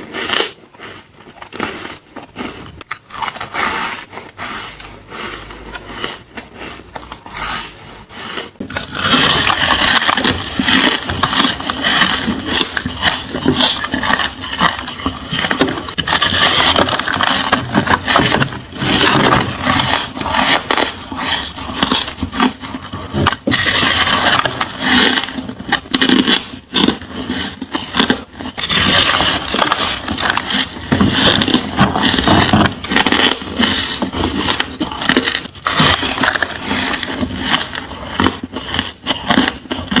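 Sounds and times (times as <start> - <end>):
ice being chewed: 0.0 - 40.0.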